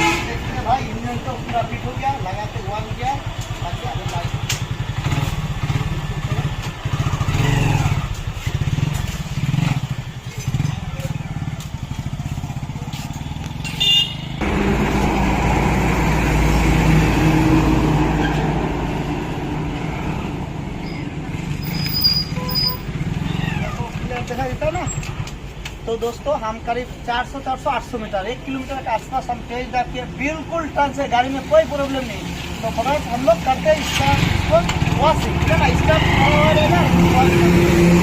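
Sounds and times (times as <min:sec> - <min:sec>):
motorcycle engine running: 0:00.8 - 0:15.0, 0:32.9 - 0:38.0.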